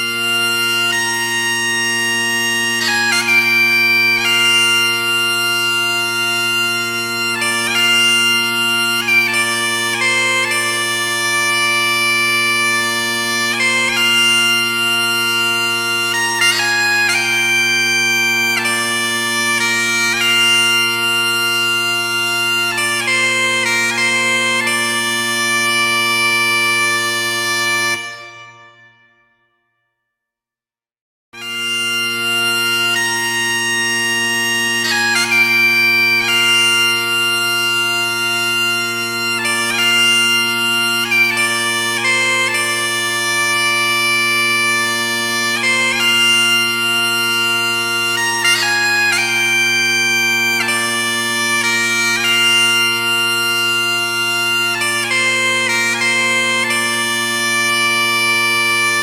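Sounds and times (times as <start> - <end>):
bagpipes playing a tune: 0.0 - 29.2, 31.4 - 59.0.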